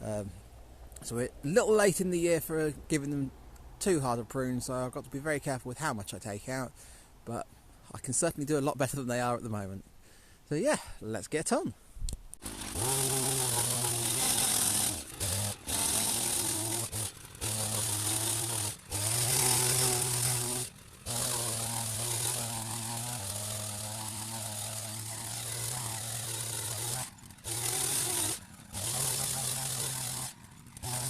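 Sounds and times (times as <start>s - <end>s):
hedge trimmer running: 12.4s - 31.0s.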